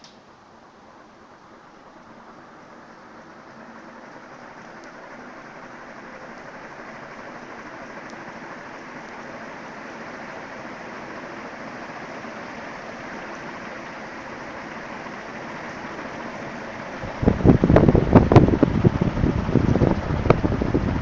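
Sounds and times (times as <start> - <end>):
ceiling fan whooshing: 0.0 - 21.0
air gusts buffeting microphone: 16.1 - 21.0.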